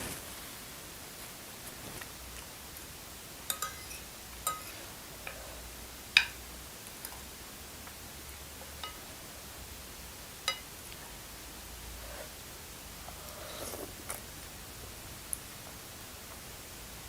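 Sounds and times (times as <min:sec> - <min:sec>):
metal fork clinking on bowl: 0:03.5 - 0:04.8, 0:08.8 - 0:09.0.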